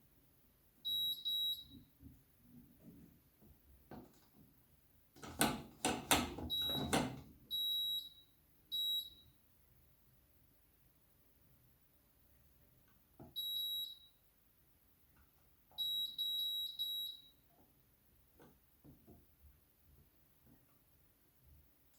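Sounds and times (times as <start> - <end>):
washing machine panel beeping: 5.2 - 9.2.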